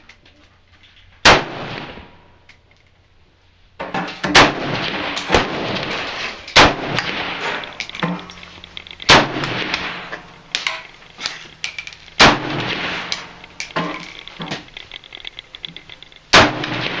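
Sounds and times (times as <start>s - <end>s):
loud shotgun shots: 1.2s - 2.2s, 4.2s - 8.3s, 9.0s - 10.6s, 12.2s - 14.0s, 16.3s - 17.0s.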